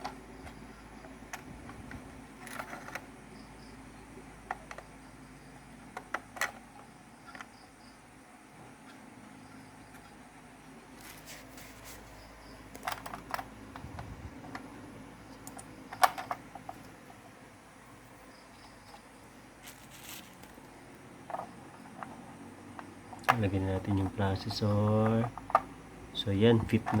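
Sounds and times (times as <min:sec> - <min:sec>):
rustling: 0:10.9 - 0:14.5, 0:18.8 - 0:21.4
computer parts clicking: 0:15.3 - 0:17.0.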